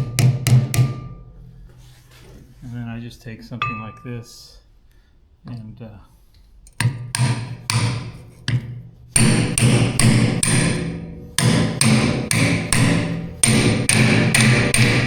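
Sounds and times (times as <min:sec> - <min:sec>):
hammer striking metal: 0:00.0 - 0:01.6, 0:03.6 - 0:04.3, 0:06.8 - 0:15.0.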